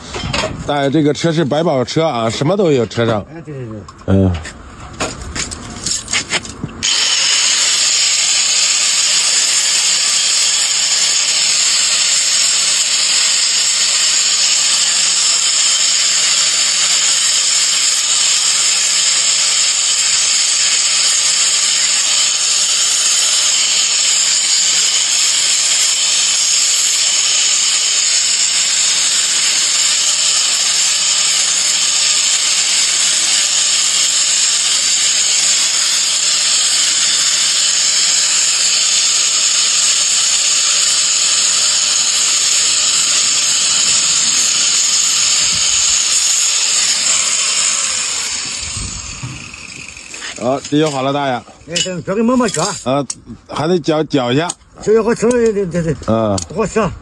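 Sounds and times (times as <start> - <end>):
electric grinder grinding metal: 5.2 - 53.2.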